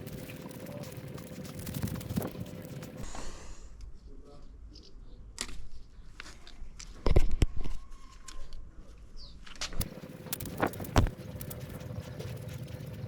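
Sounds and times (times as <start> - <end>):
faint steady hum: 9.8 - 13.0.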